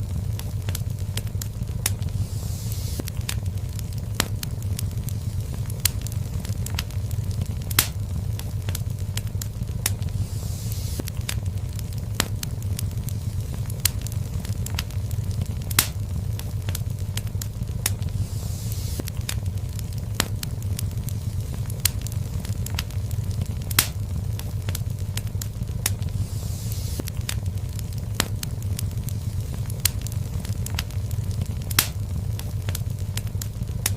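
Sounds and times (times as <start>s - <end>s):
fire hissing: 0.0s - 33.9s
fire popping: 0.0s - 33.9s
wood fire crackling: 0.0s - 33.9s.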